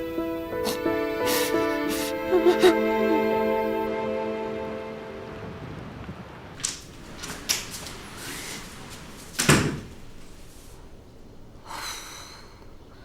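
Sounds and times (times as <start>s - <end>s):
door shutting: 6.6s - 10.9s
short rustle: 6.6s - 11.7s.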